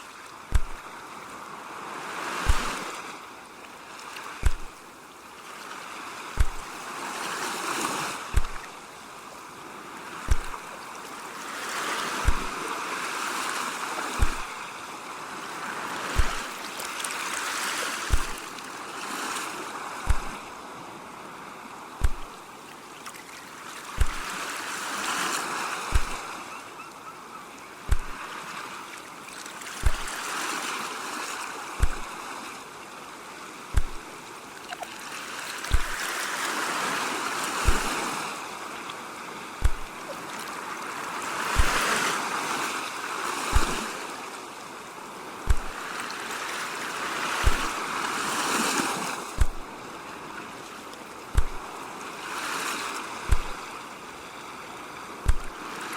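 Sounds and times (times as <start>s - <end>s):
ocean waves washing: 0.0s - 55.9s
regular low thump: 0.5s - 0.9s, 2.5s - 2.8s, 4.4s - 4.8s, 6.4s - 6.7s, 8.3s - 8.7s, 10.3s - 10.6s, 12.2s - 12.5s, 14.2s - 14.5s, 16.2s - 16.5s, 18.1s - 18.4s, 20.1s - 20.4s, 22.0s - 22.4s, 24.0s - 24.3s, 25.9s - 26.2s, 27.9s - 28.2s, 29.8s - 30.1s, 31.8s - 32.1s, 33.8s - 34.1s, 35.7s - 36.0s, 37.7s - 38.0s, 39.6s - 40.0s, 41.6s - 41.8s, 43.6s - 43.8s, 45.5s - 45.8s, 47.4s - 47.7s, 49.4s - 49.7s, 51.4s - 51.7s, 53.3s - 53.6s, 55.2s - 55.6s.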